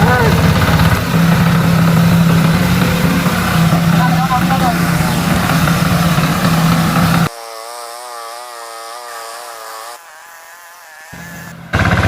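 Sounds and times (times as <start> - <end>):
tractor engine running: 0.0 - 7.3, 11.1 - 12.0.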